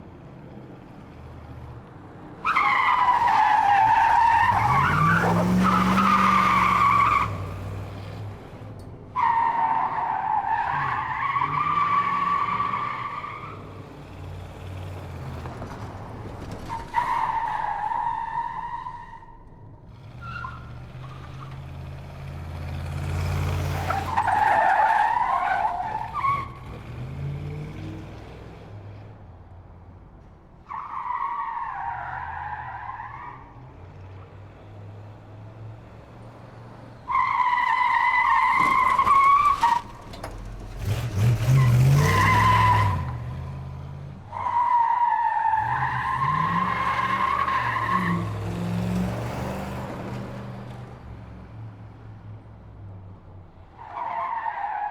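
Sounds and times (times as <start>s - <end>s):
tyres squealing: 37.1s - 43.2s
car engine revving: 39.8s - 44.3s.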